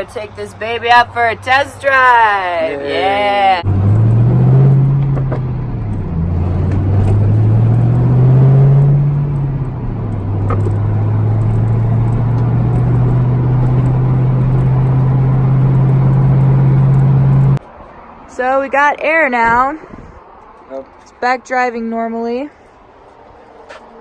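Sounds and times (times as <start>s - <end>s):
supercharged car engine driving: 3.5s - 17.6s.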